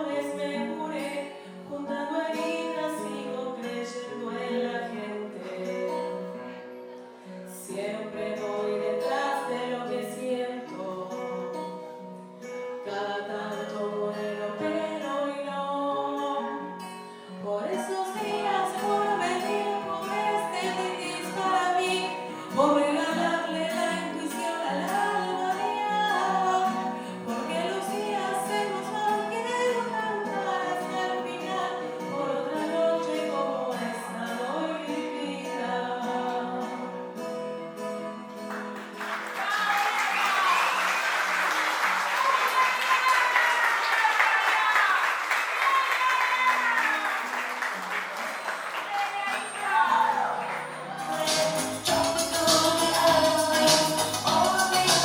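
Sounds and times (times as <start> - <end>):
guitar accompaniment: 0.0 - 55.0
person singing: 17.4 - 37.0, 49.6 - 55.0.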